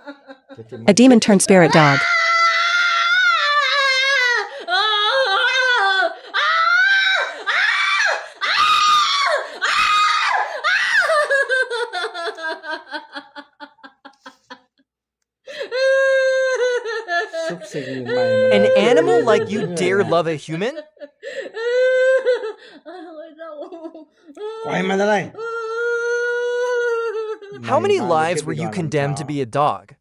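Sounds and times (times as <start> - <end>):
person laughing and shrieking: 15.7 - 20.8, 27.4 - 28.7.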